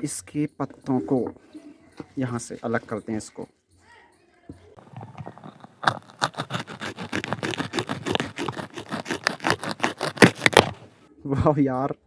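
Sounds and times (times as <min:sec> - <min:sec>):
crunchy cutting of leaves: 0:04.8 - 0:11.0.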